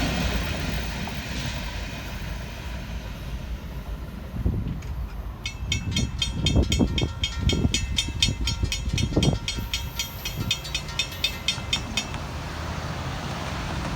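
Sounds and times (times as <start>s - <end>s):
freight train cars rolling: 0.0s - 13.9s
grade crossing bell ringing: 5.4s - 13.4s.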